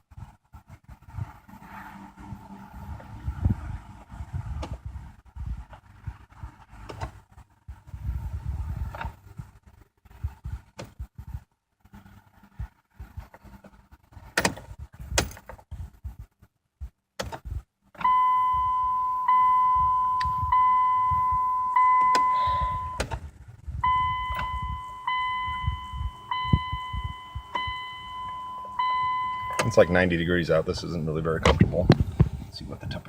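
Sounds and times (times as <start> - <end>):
car warning chime: 18.0 - 23.1, 23.8 - 31.6.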